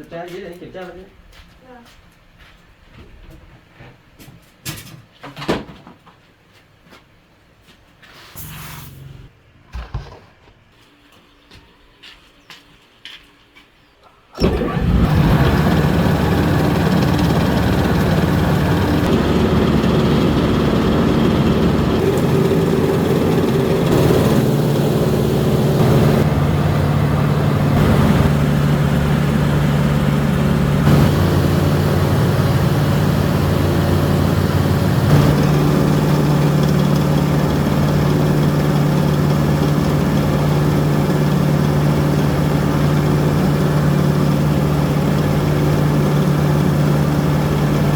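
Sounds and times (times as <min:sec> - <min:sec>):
rice milling machine droning: 0:14.4 - 0:47.9.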